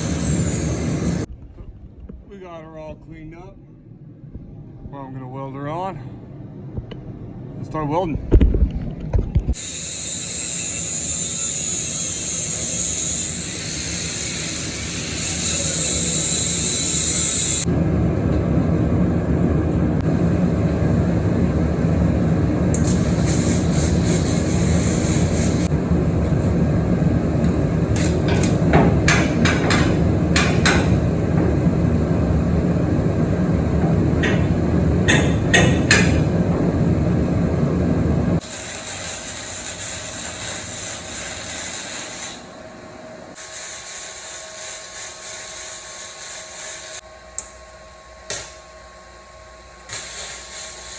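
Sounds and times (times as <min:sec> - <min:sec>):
arc welder popping: 0:22.7 - 0:26.5, 0:27.4 - 0:31.8, 0:38.4 - 0:42.5, 0:43.3 - 0:48.8, 0:49.4 - 0:50.9.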